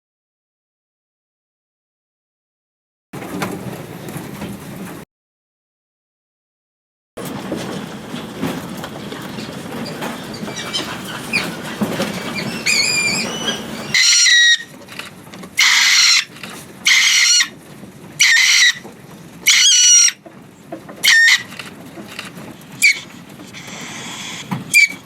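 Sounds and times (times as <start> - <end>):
mink squealing: 10.3 - 17.6, 18.2 - 18.8, 19.4 - 20.2, 21.0 - 22.2, 22.8 - 25.0.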